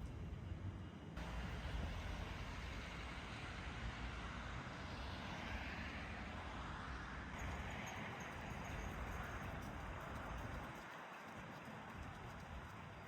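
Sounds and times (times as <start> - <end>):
city traffic rumble: 0.0 - 13.0.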